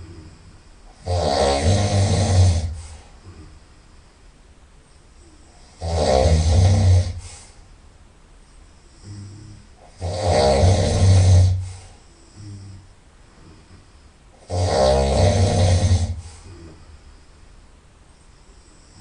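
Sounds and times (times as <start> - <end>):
person snoring loudly: 0.0 - 3.0, 5.6 - 7.4, 9.0 - 12.8, 14.4 - 16.8.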